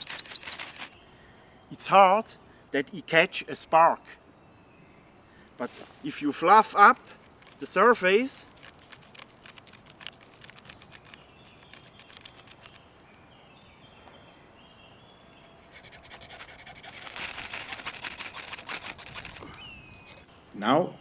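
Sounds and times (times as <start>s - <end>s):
saw blade rasping fungus: 0.0s - 1.0s, 15.8s - 19.5s.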